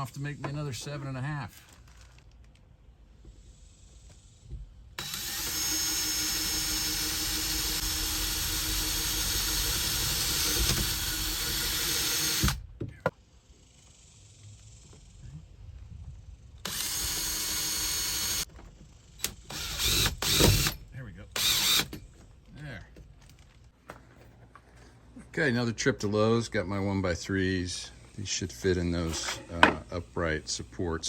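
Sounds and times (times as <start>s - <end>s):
power tool motor running: 5.0s - 12.6s, 16.6s - 18.5s, 19.2s - 20.8s, 21.4s - 22.0s.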